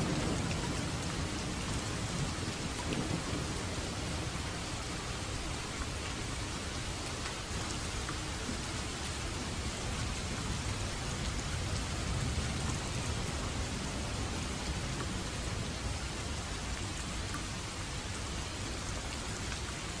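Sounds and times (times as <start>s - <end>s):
low thunder rumble: 0.0s - 6.0s, 9.6s - 16.4s
steady rain falling: 0.0s - 20.0s.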